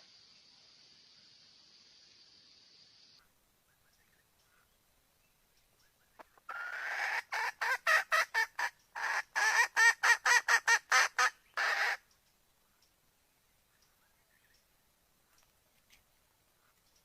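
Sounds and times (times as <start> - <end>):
junglefowl hen clucking: 6.2 - 12.1.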